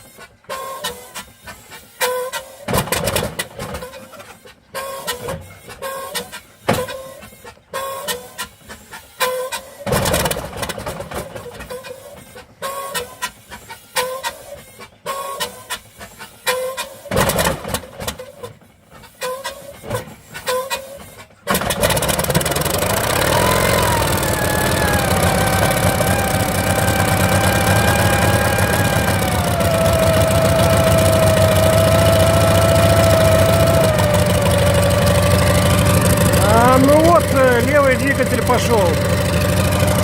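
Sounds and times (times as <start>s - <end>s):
engine whine: 21.6s - 40.0s
helicopter engine rushing: 21.8s - 40.0s.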